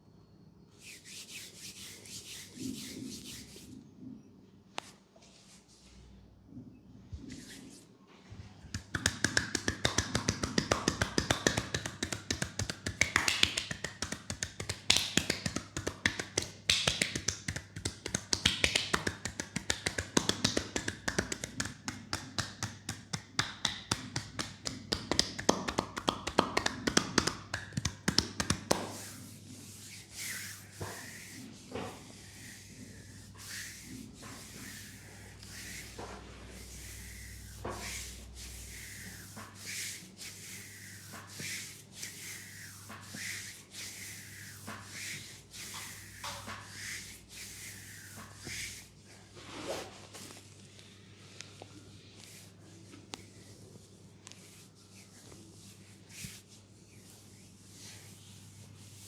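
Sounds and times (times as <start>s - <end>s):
hands rubbing skin: 0.8s - 3.8s, 8.7s - 48.9s, 52.2s - 59.0s
hands tapping on skin: 8.7s - 29.1s.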